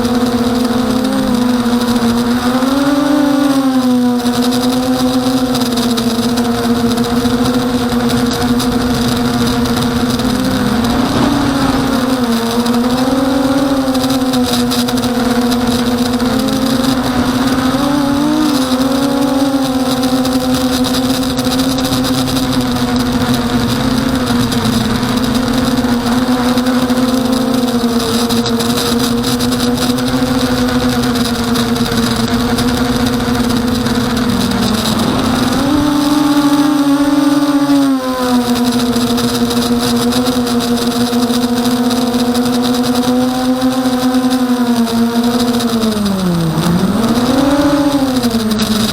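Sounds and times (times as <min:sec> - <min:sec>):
quadcopter motors buzzing: 0:00.0 - 0:48.9.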